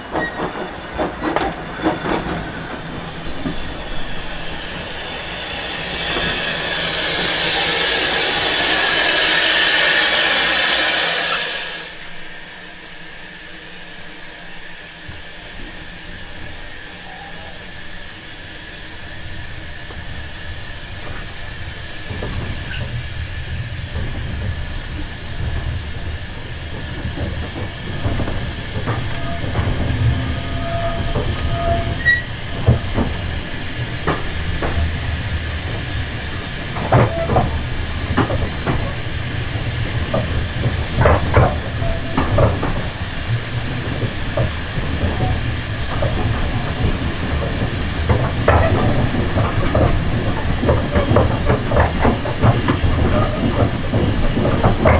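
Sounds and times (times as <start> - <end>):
hiss of steam: 0.0 - 54.9
train low rumble: 0.0 - 54.9
wheels clicking over rail joints: 19.8 - 54.9.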